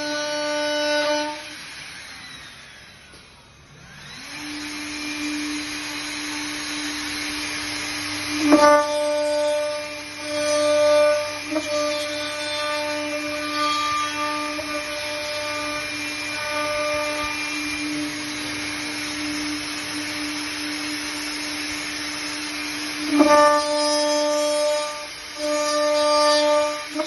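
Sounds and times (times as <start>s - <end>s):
milling spindle whine: 0.0s - 27.0s
rasping cutting noise: 3.9s - 27.0s.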